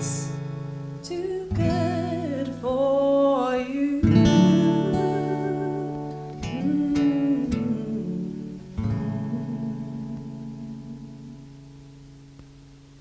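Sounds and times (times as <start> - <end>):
woman singing: 0.0 - 0.4, 1.0 - 11.7
acoustic guitar chords: 0.0 - 13.0.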